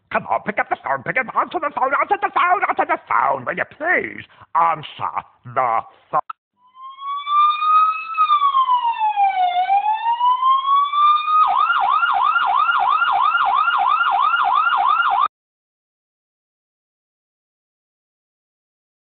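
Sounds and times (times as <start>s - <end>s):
electronic siren wailing and yelping: 6.6s - 15.3s.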